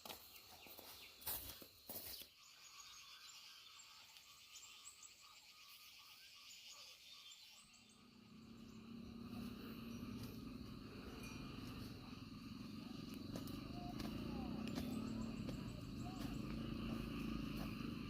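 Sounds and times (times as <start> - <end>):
frogs and insects calling: 0.1 - 18.0
low steady hum: 7.9 - 18.0.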